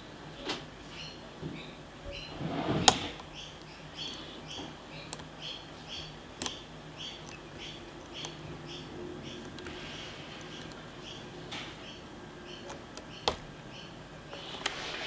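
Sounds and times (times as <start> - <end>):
lock picks scraping and clicking: 2.7 - 8.4, 9.2 - 11.2.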